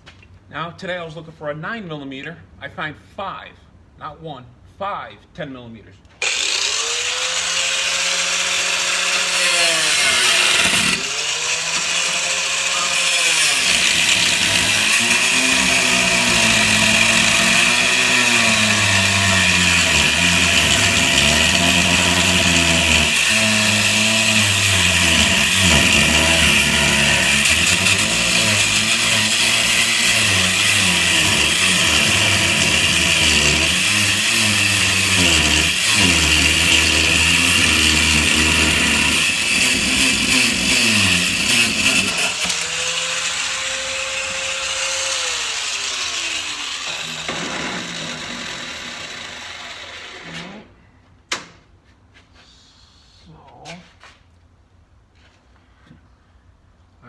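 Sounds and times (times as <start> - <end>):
angle grinder cutting steel: 6.2 - 50.3.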